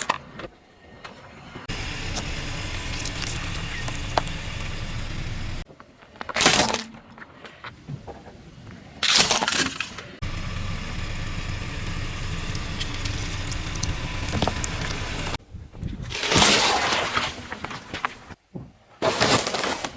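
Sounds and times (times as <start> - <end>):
car engine and tyre noise: 0.1 - 5.6, 10.2 - 15.5, 17.1 - 18.4
small cracks under tyres: 1.7 - 5.6, 9.1 - 18.4.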